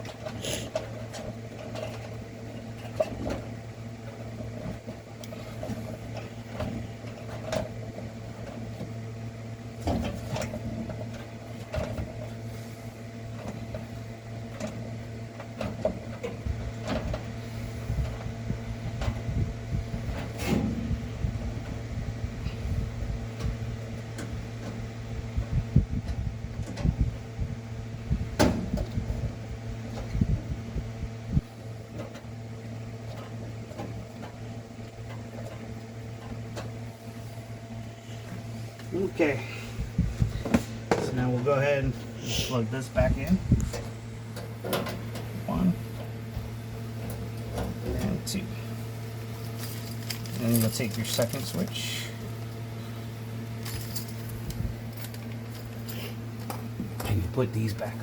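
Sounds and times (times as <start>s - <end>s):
steady low hum: 0.0s - 58.0s
clicks and knocks of parts handled: 49.4s - 51.8s.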